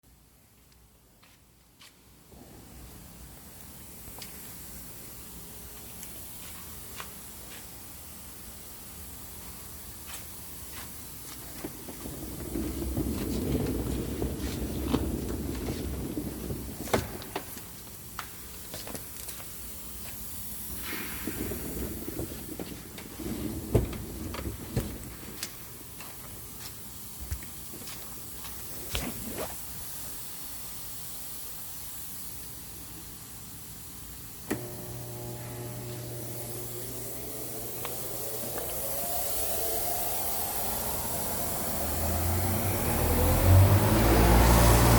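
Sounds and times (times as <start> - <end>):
vacuum motor humming and whining: 34.5 - 44.9.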